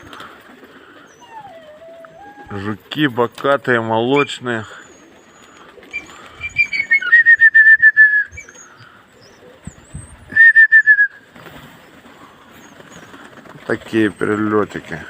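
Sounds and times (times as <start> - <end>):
loud trilled whistling: 6.0 - 8.6, 10.3 - 11.2.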